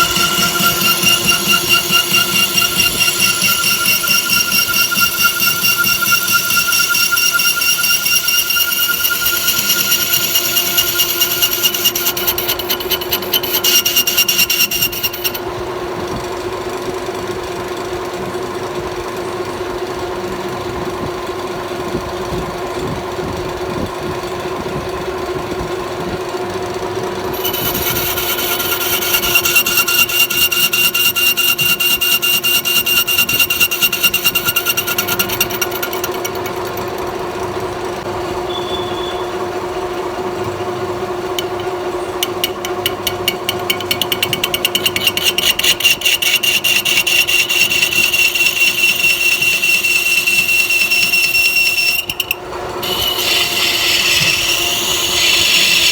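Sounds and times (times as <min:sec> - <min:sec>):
cutting tool ringing and ticking: 0:00.0 - 0:15.5, 0:27.3 - 0:37.5, 0:40.6 - 0:55.9
metal lathe humming: 0:00.0 - 0:15.5, 0:27.3 - 0:38.1, 0:40.2 - 0:55.9.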